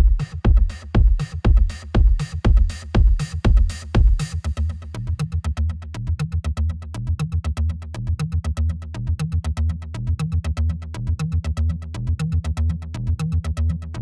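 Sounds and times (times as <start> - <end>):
electronic music with synthesizer beat: 0.0 - 5.4.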